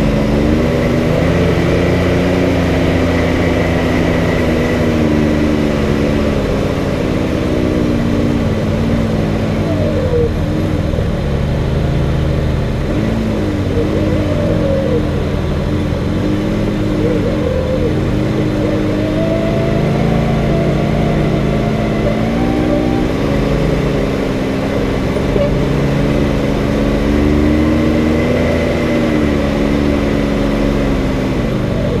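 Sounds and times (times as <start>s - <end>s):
engine revving under throttle: 0.0s - 32.0s.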